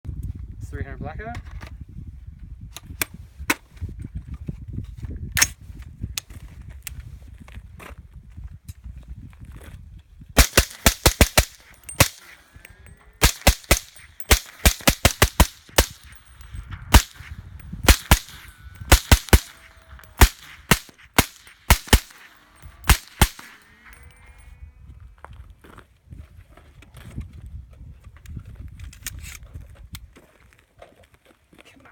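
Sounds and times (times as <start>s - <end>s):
rifle shots: 10.4s - 12.5s, 13.2s - 24.2s
buzz of tumbling bullets: 10.4s - 24.6s.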